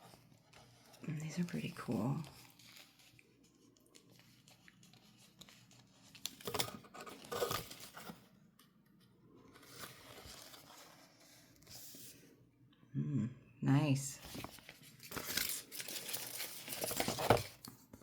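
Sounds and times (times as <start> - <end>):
packaging crinkling and tearing: 1.8 - 8.4, 14.3 - 17.7.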